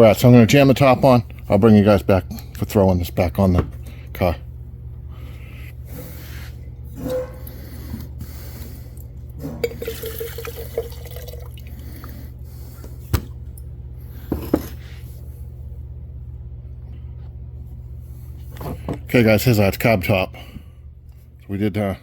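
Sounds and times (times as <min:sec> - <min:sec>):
steady low hum: 0:00.0 - 0:22.0
fuel pouring and dripping: 0:09.6 - 0:11.8.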